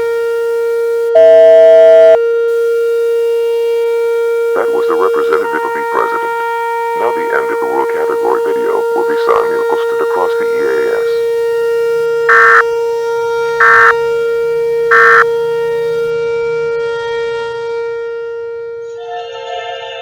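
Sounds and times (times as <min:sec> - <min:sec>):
siren-like droning alert tone: 0:00.0 - 0:16.1
digital data signal bursts: 0:02.5 - 0:12.7, 0:13.6 - 0:14.1, 0:14.9 - 0:16.0.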